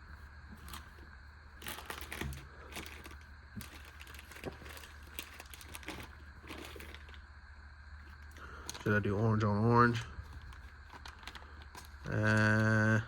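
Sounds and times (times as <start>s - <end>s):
rustling: 0.0s - 7.3s, 10.2s - 12.2s.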